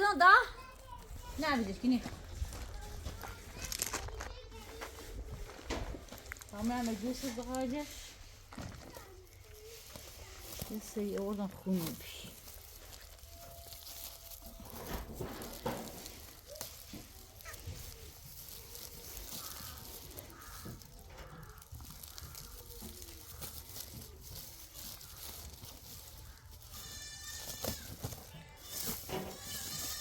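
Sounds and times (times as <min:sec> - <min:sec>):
rustling: 0:00.0 - 0:30.0
goats and sheep bleating: 0:26.3 - 0:30.0.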